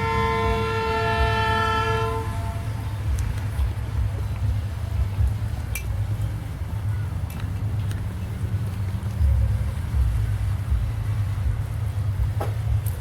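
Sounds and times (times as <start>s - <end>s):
locomotive air horn: 0.0s - 2.9s
freight train rumbling past: 0.0s - 13.0s.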